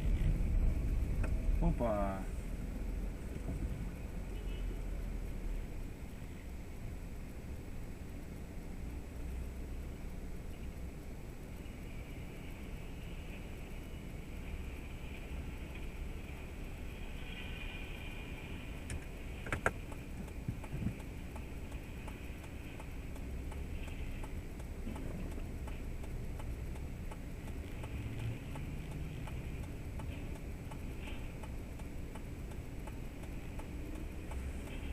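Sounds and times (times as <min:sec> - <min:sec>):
faint ticks and rattles: 0:07.8 - 0:34.9.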